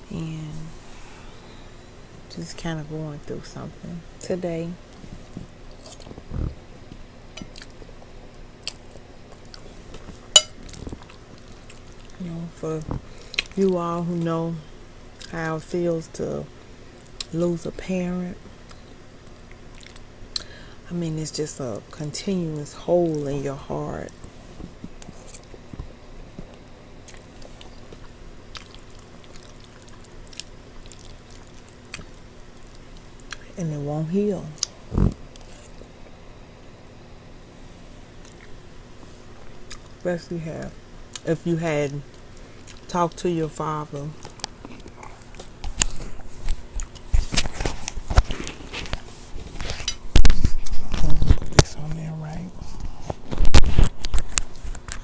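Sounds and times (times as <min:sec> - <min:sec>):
quiet chewing: 0:04.9 - 0:12.2, 0:18.6 - 0:20.5, 0:24.1 - 0:33.5, 0:34.6 - 0:36.2, 0:38.2 - 0:40.0, 0:42.1 - 0:42.9, 0:44.0 - 0:51.4.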